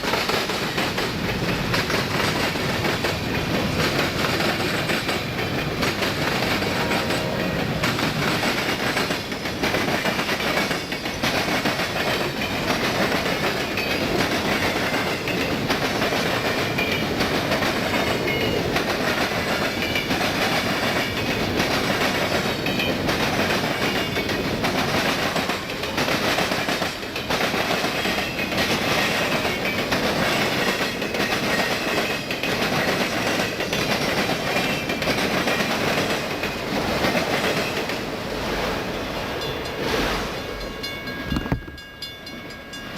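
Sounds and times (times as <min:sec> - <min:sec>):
freight train cars rolling past: 0:00.0 - 0:42.9
wheels clicking over rail joints: 0:00.0 - 0:42.9.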